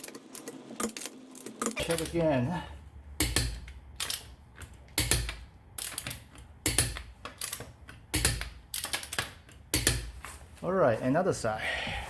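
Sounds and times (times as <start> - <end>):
torque wrench clicking: 3.2 - 10.1.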